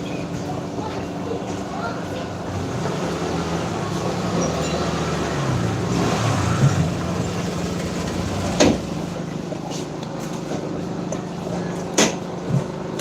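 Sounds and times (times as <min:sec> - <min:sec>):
scooter engine running: 0:01.1 - 0:11.8.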